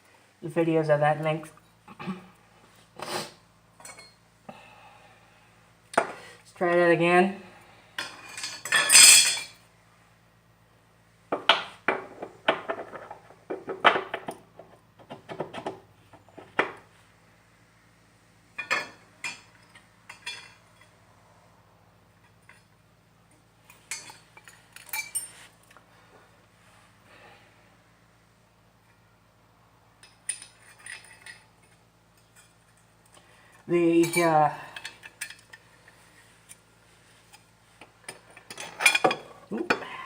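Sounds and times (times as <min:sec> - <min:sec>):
metal tools clinking and tapping: 0:03.8 - 0:04.2, 0:08.0 - 0:09.6, 0:18.6 - 0:21.0, 0:23.6 - 0:25.8, 0:30.0 - 0:33.2, 0:33.9 - 0:36.6, 0:38.0 - 0:39.9.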